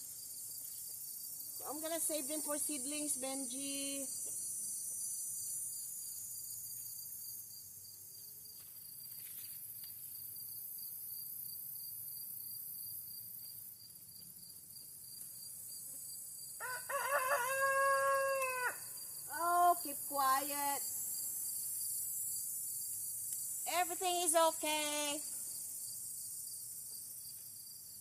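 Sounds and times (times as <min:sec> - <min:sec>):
high insect buzz: 0:00.0 - 0:28.0
rooster crowing: 0:16.6 - 0:19.0.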